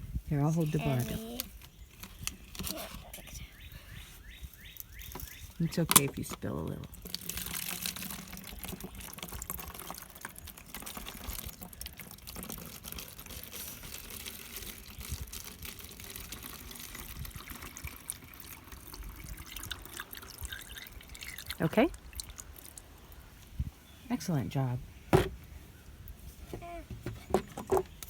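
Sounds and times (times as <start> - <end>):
water drips: 4.5 - 13.3, 15.2 - 23.7
water pouring into tub: 6.9 - 23.2.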